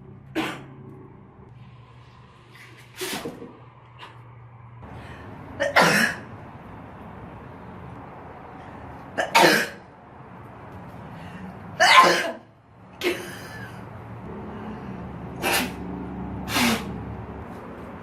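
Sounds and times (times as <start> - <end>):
person sneezing: 11.8 - 12.4, 15.4 - 15.8, 16.5 - 17.0.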